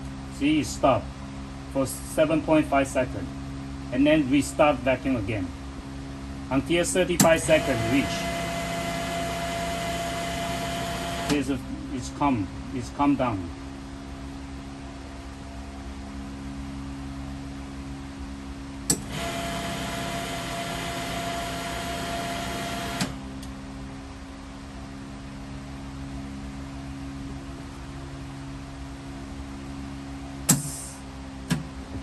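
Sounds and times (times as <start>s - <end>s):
air hissing with whine: 6.3s - 13.2s, 18.8s - 23.5s, 30.3s - 31.6s
vacuum machine humming: 7.2s - 11.6s, 18.9s - 23.7s.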